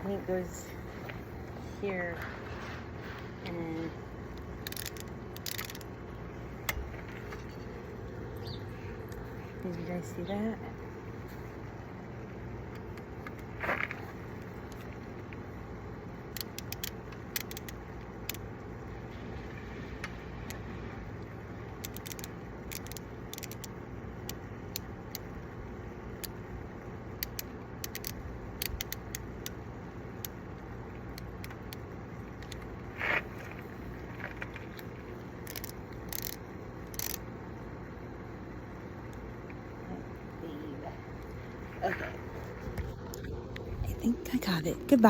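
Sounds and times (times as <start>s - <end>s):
steady background hiss: 0.0s - 45.0s
bike lock clicking and rattling: 4.3s - 5.9s, 16.3s - 18.5s, 21.8s - 25.3s, 27.2s - 29.6s, 35.4s - 37.2s.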